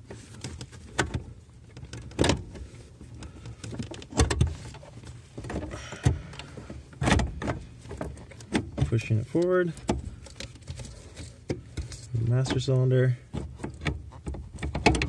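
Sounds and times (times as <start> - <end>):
rustling and scraping: 0.0 - 15.0
metal bracket clunks and knocks: 13.3 - 15.0.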